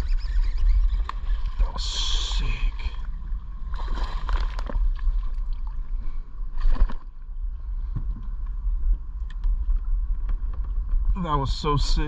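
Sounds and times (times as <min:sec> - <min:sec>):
wind rumble on microphone: 0:00.0 - 0:12.0
small clicks from handling gear: 0:08.2 - 0:11.1.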